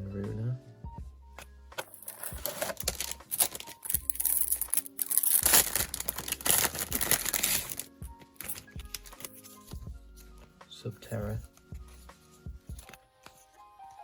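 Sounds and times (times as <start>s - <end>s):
soft background music: 0.0s - 14.0s
plastic packet crinkling and tearing: 2.0s - 9.4s.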